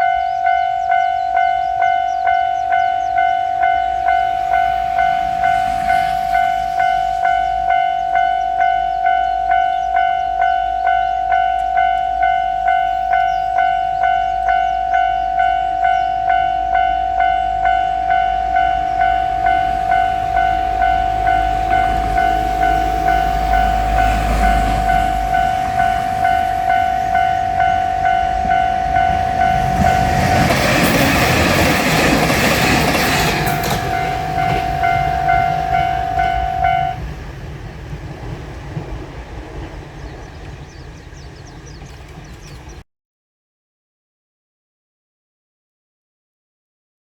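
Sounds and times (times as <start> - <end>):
level crossing warning bell: 0.0 - 37.2
diesel railcar engine rumble: 0.0 - 42.8
train passing: 0.0 - 42.8.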